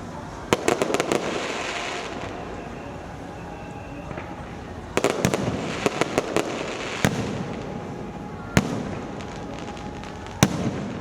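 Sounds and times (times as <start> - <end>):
firecrackers cracking: 0.0 - 11.0
fireworks loud bangs: 0.4 - 11.0.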